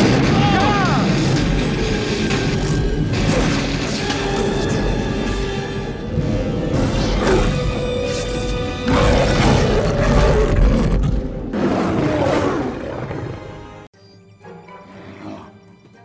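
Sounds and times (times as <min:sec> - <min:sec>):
lion roaring: 0:08.8 - 0:13.6, 0:14.7 - 0:15.6
background music with held notes: 0:13.3 - 0:16.0.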